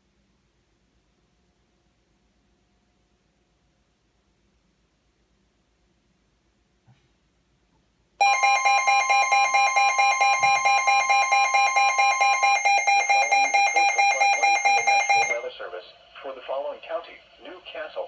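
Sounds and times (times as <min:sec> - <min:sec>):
pulsing electronic alert tone: 0:08.2 - 0:15.4.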